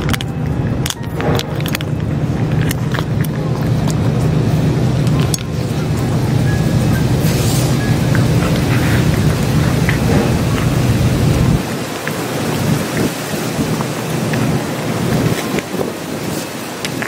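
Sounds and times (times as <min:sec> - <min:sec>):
steady rain falling: 0:00.0 - 0:17.0
water drips ticking: 0:00.0 - 0:17.0
wind buffeting microphone: 0:00.0 - 0:17.0.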